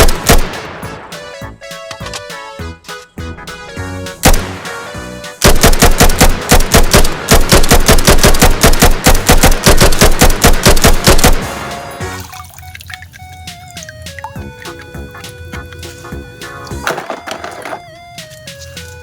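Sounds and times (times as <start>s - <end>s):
automatic gunfire: 0.0s - 0.9s, 4.2s - 11.6s
background music: 0.0s - 19.0s.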